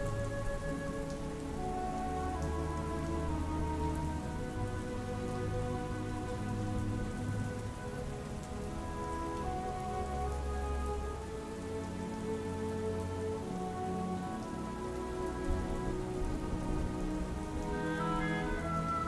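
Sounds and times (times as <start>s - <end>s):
slow ambient music: 0.0s - 19.0s
soft rain falling: 0.0s - 19.0s.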